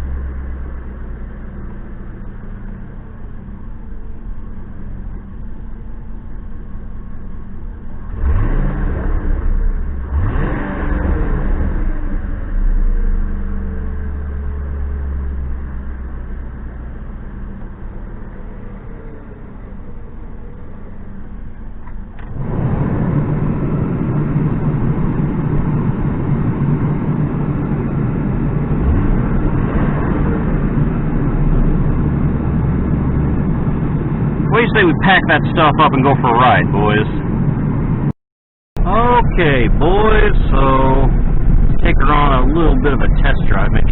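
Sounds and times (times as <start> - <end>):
engine revving and idling: 0.0 - 38.1, 38.8 - 43.9
loud steady noise: 38.8 - 43.9.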